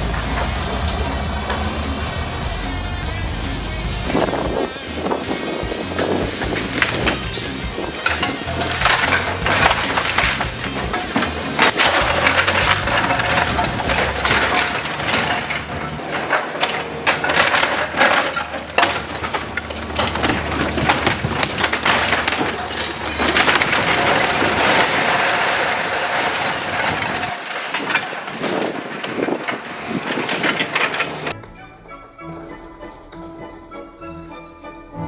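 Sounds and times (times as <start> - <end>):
excavator engine running low: 0.0 - 27.4
wood cracking and crashing: 0.0 - 31.4.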